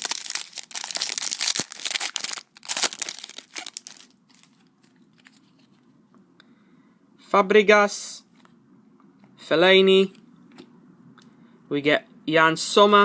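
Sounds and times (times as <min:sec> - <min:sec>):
foil wrapper crinkling and tearing: 0:00.0 - 0:04.7.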